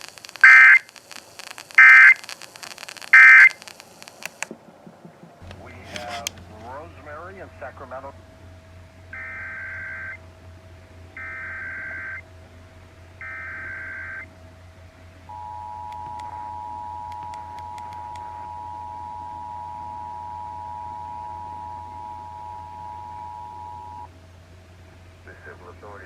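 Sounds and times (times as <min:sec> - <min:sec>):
digital data tone bursts: 0:00.0 - 0:04.2, 0:13.2 - 0:14.3, 0:15.3 - 0:24.1
faint steady whistle: 0:09.1 - 0:10.3, 0:11.1 - 0:12.3, 0:13.2 - 0:14.3, 0:15.3 - 0:24.1
two-tone attention signal: 0:15.3 - 0:24.1.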